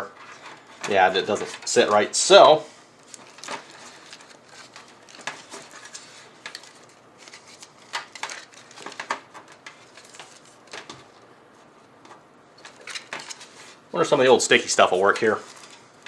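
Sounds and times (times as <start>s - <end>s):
cables and connectors clicking: 3.0s - 11.1s.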